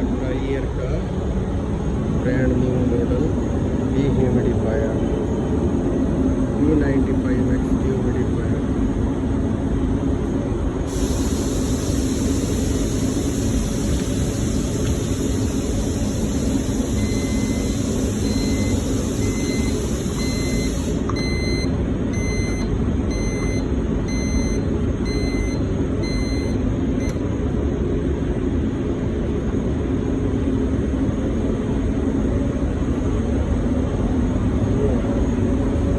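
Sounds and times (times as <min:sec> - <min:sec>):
dehumidifier blower drone: 0:00.0 - 0:35.9
short electronic beeps: 0:17.0 - 0:27.2.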